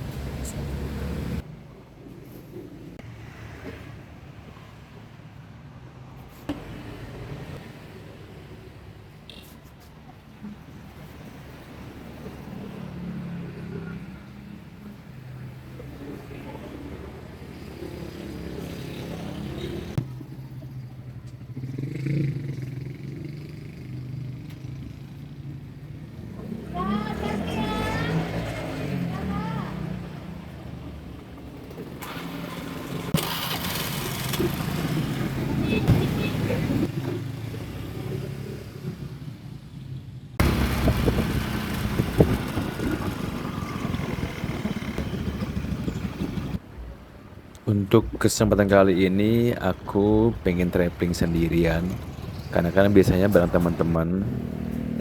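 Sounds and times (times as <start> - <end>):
vehicle engine rumbling: 0.0 - 3.0, 13.4 - 55.0
vehicle engine running: 40.4 - 46.6.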